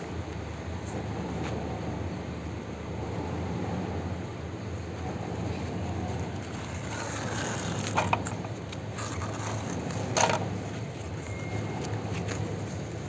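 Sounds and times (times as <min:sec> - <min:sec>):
plastic toys handled in sand: 0:05.7 - 0:13.0.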